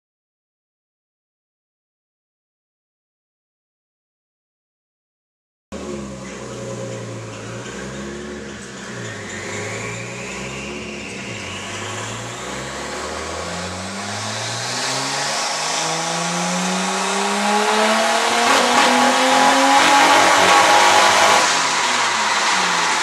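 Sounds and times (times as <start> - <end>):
car engine accelerating: 5.7 - 23.0.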